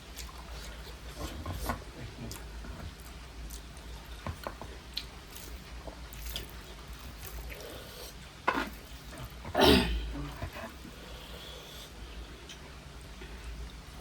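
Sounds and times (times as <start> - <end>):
wet chewing and lip smacks: 2.2 - 4.0.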